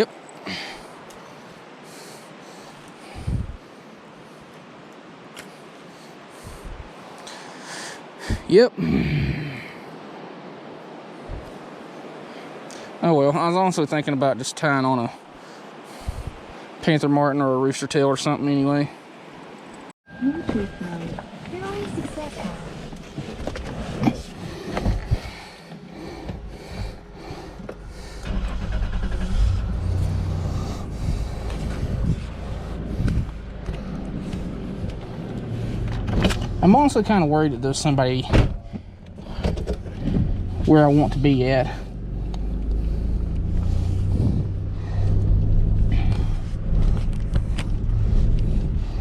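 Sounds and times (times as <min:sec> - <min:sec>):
car engine starting and idling: 0:25.7 - 0:49.0.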